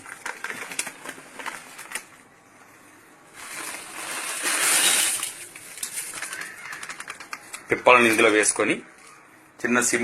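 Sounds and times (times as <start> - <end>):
dried peppers poured into pan: 3.3 - 6.4.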